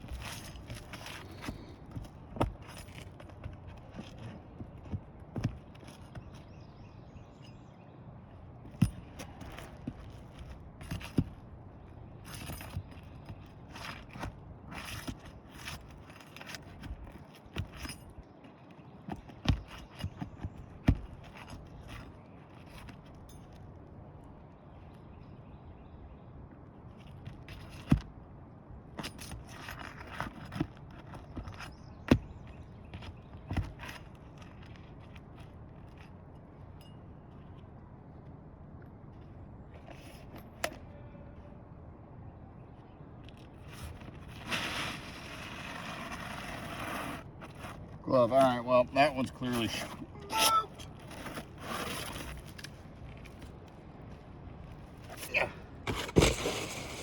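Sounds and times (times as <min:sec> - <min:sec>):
tools scraping roof shingles: 0:00.0 - 0:06.4, 0:43.6 - 0:53.5, 0:55.0 - 0:57.0.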